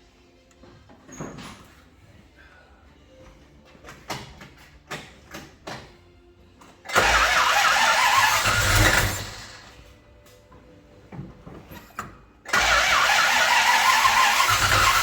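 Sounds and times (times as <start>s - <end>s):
car engine starting: 6.9s - 9.9s, 12.5s - 15.0s.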